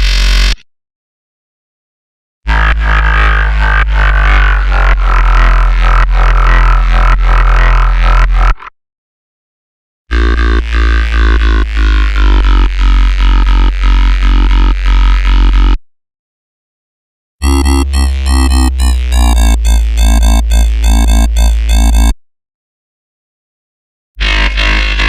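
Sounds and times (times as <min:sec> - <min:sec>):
dubstep electronic bass loop: 0:02.6 - 0:08.5, 0:10.2 - 0:15.8, 0:17.4 - 0:22.2, 0:24.2 - 0:25.0.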